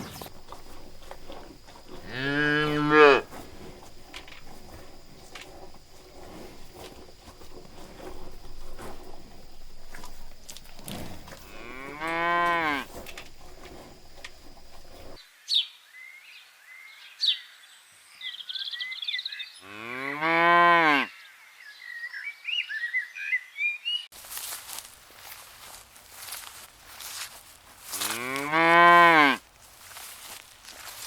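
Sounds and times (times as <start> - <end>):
birds chirping: 0.0 - 15.2
cow mooing: 0.3 - 6.7, 7.6 - 15.2, 19.6 - 21.1, 27.9 - 29.4.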